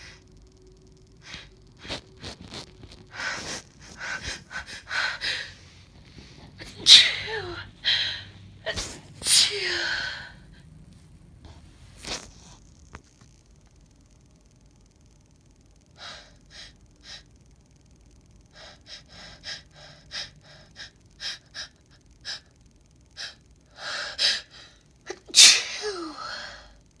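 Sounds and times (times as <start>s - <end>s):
woman sneezing: 6.6s - 7.6s, 8.7s - 10.2s, 25.1s - 26.3s.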